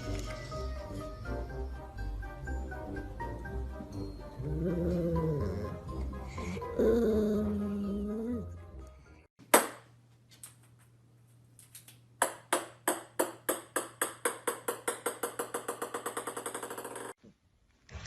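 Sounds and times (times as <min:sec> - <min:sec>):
small ball bouncing on hard surface: 0:12.2 - 0:17.2.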